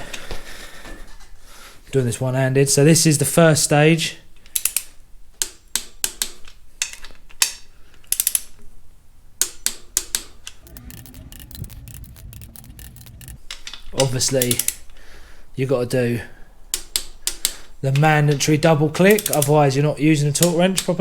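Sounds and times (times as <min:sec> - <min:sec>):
torque wrench clicking: 0:19.1 - 0:19.5.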